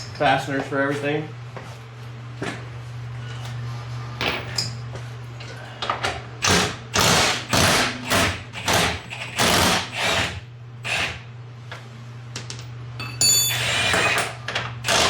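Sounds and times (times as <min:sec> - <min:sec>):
steady low hum: 0:00.0 - 0:15.0
impact wrench bursts: 0:06.4 - 0:11.2, 0:13.5 - 0:15.0.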